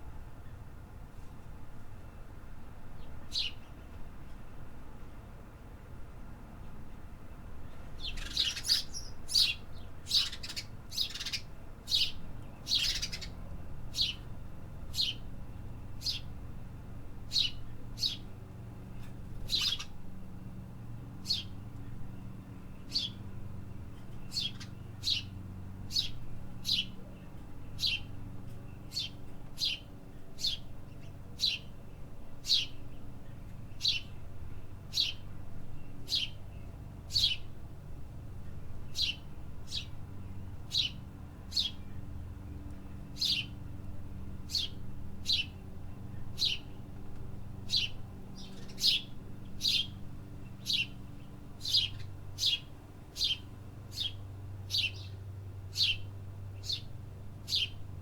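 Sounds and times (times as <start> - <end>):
city background rumble: 0.0 - 58.0
bird chirping: 3.0 - 3.6, 8.0 - 14.3, 14.9 - 15.3, 16.0 - 16.4, 17.3 - 18.3, 19.4 - 20.0, 21.2 - 22.0, 22.7 - 23.3, 23.9 - 33.0, 33.7 - 34.2, 34.9 - 37.5, 38.9 - 42.0, 43.1 - 43.6, 44.4 - 46.9, 47.6 - 57.8.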